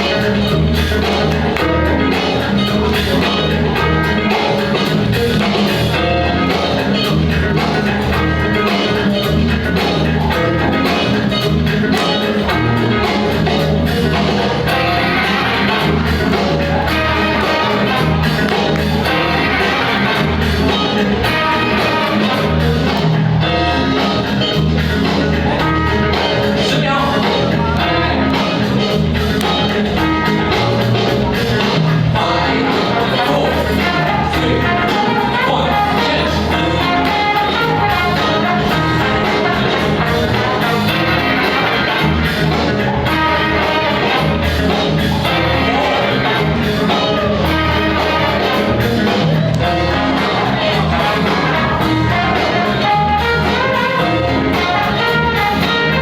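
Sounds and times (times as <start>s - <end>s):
loud music with guitar: 0.0s - 56.0s
person singing: 32.1s - 41.8s.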